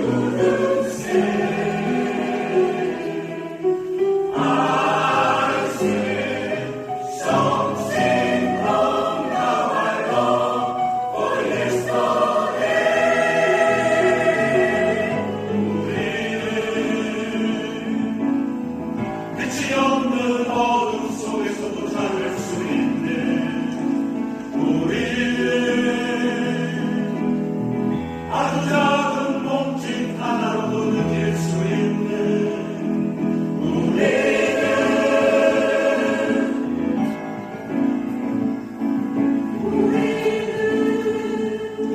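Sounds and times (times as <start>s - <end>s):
choir singing: 0.0s - 41.9s.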